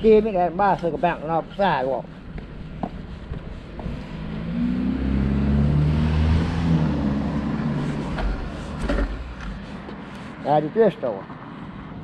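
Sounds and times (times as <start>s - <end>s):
car passing by: 3.8s - 10.5s.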